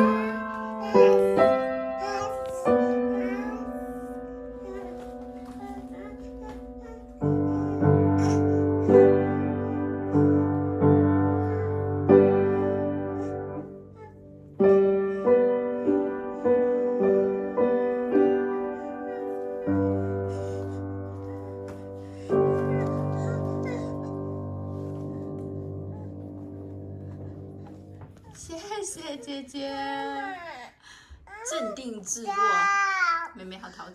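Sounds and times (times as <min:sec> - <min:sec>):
slow piano piece: 0:00.0 - 0:29.2.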